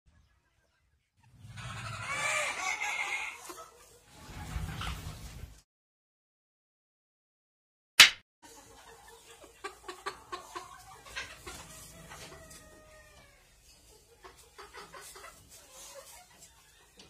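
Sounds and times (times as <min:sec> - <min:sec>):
chickens clucking: 0:00.1 - 0:05.6, 0:08.4 - 0:17.0
sharp click: 0:08.0 - 0:08.2.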